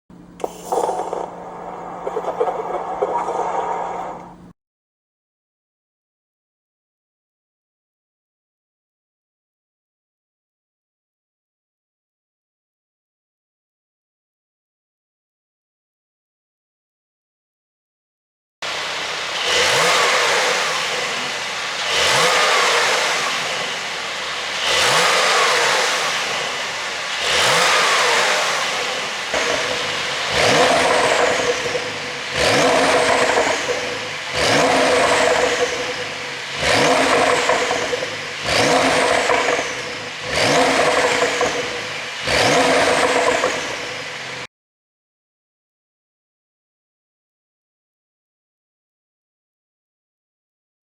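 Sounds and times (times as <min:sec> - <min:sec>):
exhaust crackles and pops: 0:00.2 - 0:04.5, 0:19.3 - 0:43.9
car engine revving: 0:00.4 - 0:04.5, 0:18.6 - 0:44.5.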